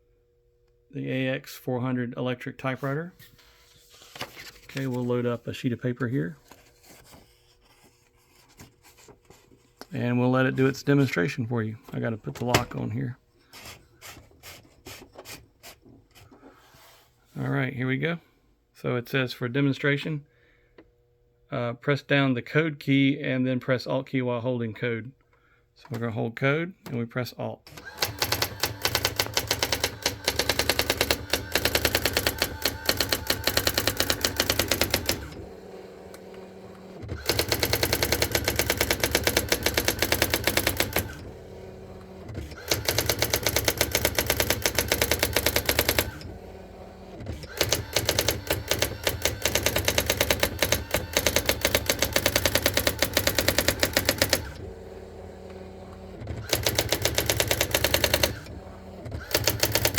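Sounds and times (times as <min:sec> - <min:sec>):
electronic typewriter printing strikes: 0:27.7 - 0:55.0, 0:56.1 - 0:59.9.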